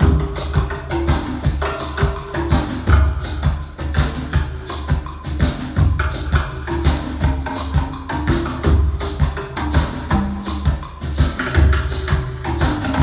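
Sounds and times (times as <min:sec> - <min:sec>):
music over loudspeakers: 0:00.0 - 0:13.0.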